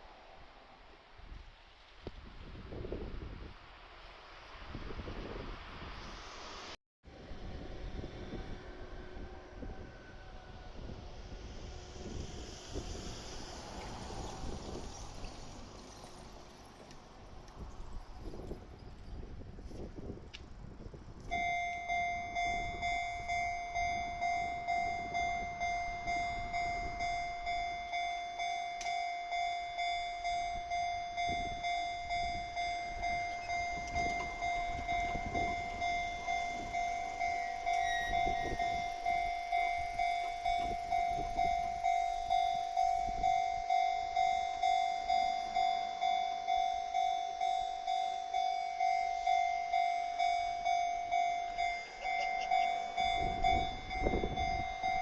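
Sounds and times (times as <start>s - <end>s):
level crossing alarm bell ringing: 21.3s - 55.0s.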